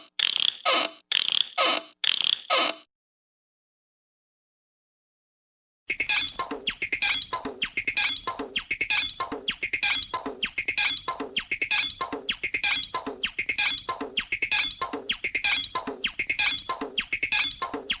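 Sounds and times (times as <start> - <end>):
stuttering electronic music: 5.9 - 18.0.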